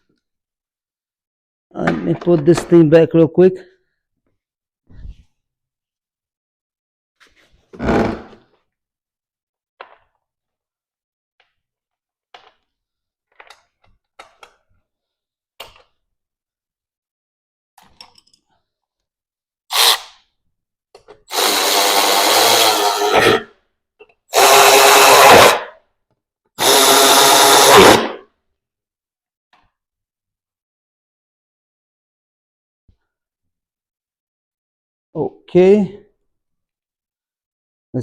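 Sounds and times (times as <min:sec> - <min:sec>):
power drill bursts: 0:19.7 - 0:20.0, 0:21.3 - 0:23.4, 0:24.3 - 0:25.7, 0:26.6 - 0:28.2.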